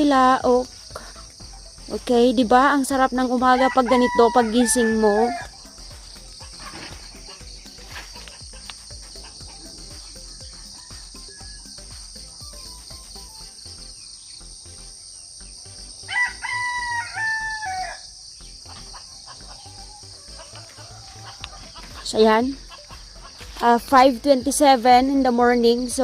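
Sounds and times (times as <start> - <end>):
rooster crowing: 3.4 - 5.6, 10.4 - 11.9, 16.0 - 18.2, 19.3 - 21.9.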